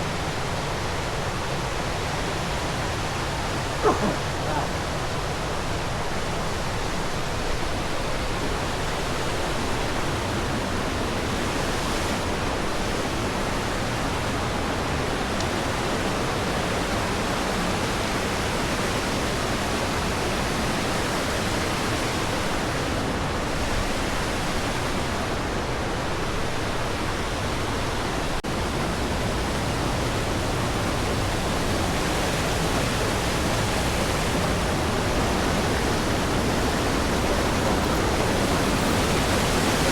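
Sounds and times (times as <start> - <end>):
whitewater rushing over rocks: 21.3 - 39.9.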